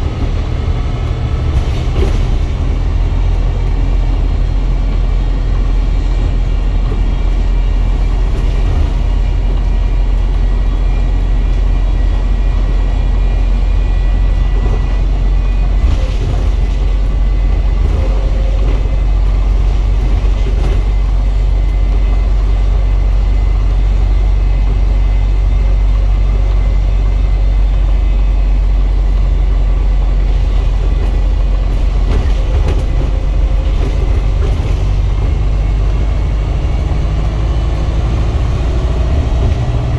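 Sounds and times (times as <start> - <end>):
bus engine low rumble: 0.0 - 39.9
high whine of bus: 0.0 - 39.9.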